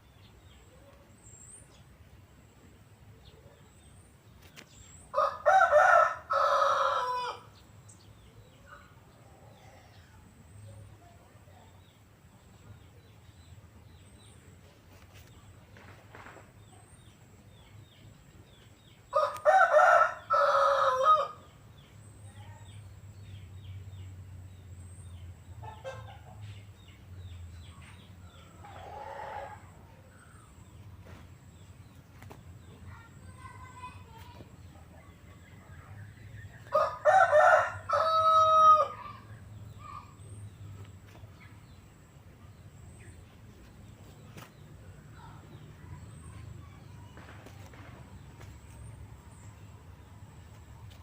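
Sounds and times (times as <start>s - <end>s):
rooster crowing: 5.1s - 7.5s, 19.1s - 21.4s, 28.8s - 29.7s, 36.7s - 39.1s.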